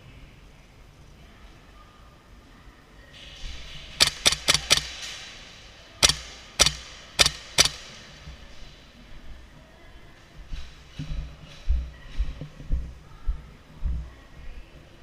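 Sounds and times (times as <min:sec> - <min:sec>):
airsoft rifle shots: 0:04.0 - 0:05.3, 0:06.0 - 0:08.2.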